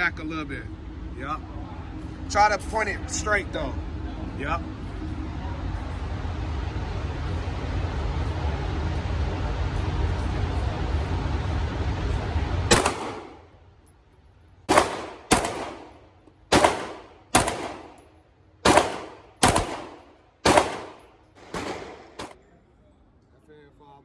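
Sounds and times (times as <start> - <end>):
gunshots with ringing echo: 12.7 - 13.5, 14.7 - 22.4.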